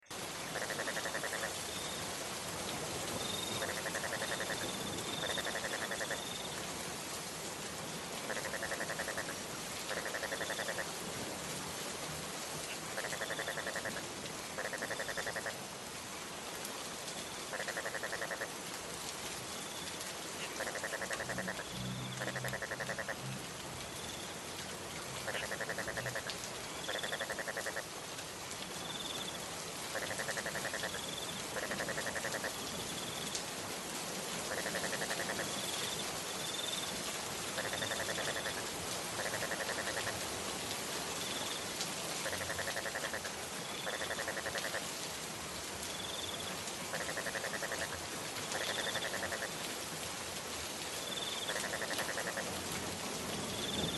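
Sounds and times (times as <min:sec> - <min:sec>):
steady rain: 0:00.0 - 0:53.9
animal calling in rapid pulses: 0:20.6 - 0:23.2, 0:42.2 - 0:44.8, 0:46.9 - 0:48.0, 0:51.5 - 0:52.4.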